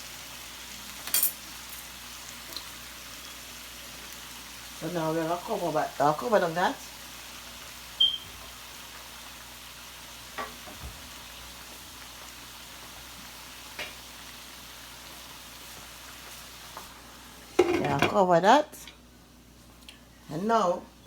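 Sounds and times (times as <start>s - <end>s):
chicken sizzling in a pot: 0.0s - 21.0s.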